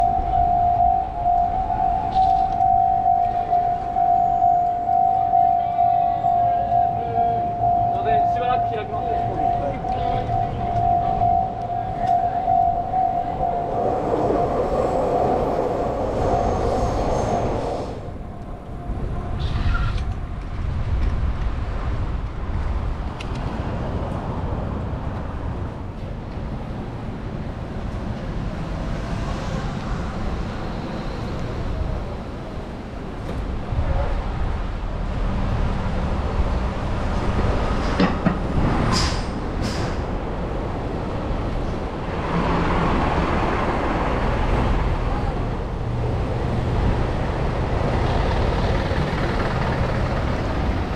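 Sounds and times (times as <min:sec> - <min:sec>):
steady tone: 0:00.0 - 0:19.3
train wheels rumbling on rails: 0:08.0 - 0:50.9.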